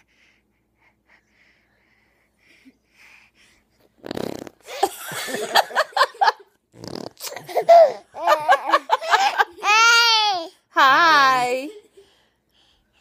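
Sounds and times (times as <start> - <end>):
boy blowing a raspberry: 4.0 - 4.7, 6.8 - 7.4
boy laughing: 4.7 - 6.5, 7.3 - 10.0.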